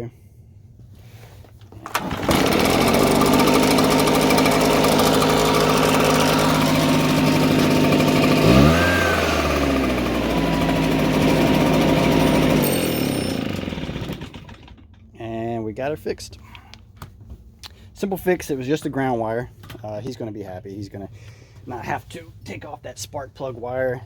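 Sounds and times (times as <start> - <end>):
leaf blower engine running: 1.8 - 15.0.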